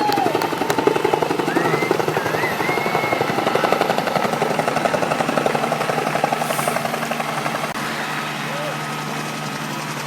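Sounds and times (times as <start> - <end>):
helicopter rotor chopping: 0.0 - 10.0
wavering high whistle: 1.4 - 3.8.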